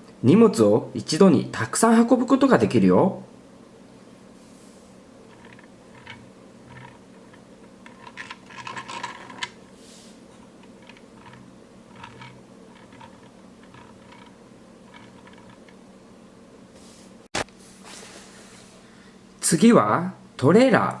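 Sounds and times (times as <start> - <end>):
plastic toy truck clicks and rattles: 5.3 - 9.6, 10.6 - 15.8.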